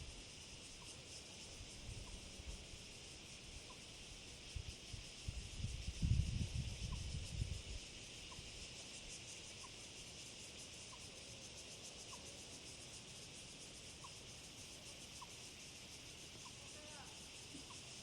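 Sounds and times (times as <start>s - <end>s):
shrill insect chorus: 0.0s - 18.0s
wind rumble on microphone: 4.4s - 8.0s.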